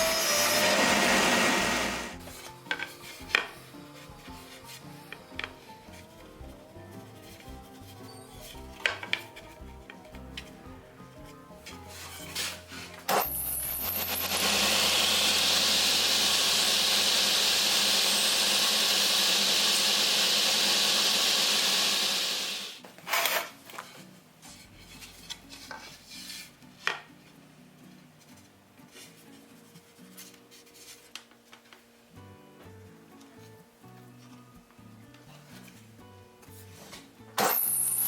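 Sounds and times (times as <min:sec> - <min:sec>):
scraping and tapping on wood: 0:02.2 - 0:06.1, 0:07.2 - 0:10.6, 0:23.7 - 0:27.1
shop machine hissing: 0:13.1 - 0:22.8.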